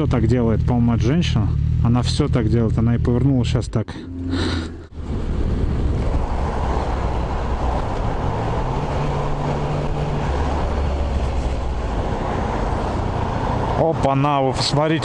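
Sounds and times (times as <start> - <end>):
motorcycle engine running: 0.0 - 5.0
wind and road noise: 0.0 - 15.0.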